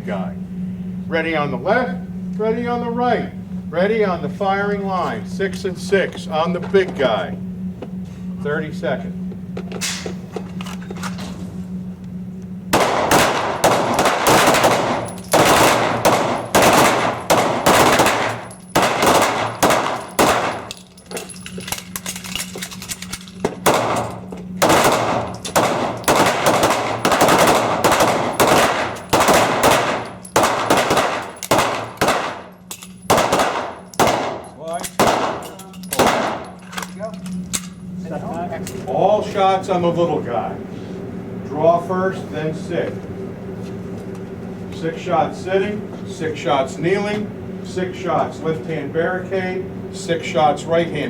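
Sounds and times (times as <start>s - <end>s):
pistol gunfire: 12.8s - 20.7s, 23.6s - 32.5s, 33.1s - 34.4s, 35.0s - 36.5s.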